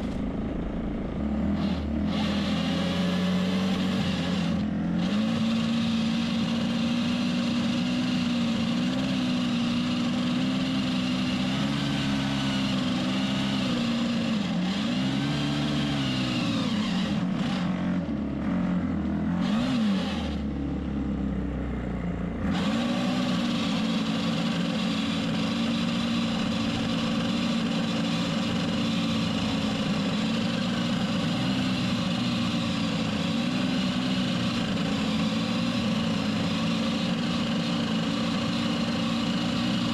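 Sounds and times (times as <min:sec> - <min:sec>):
pole saw engine running: 0:00.0 - 0:21.0, 0:22.4 - 0:39.9.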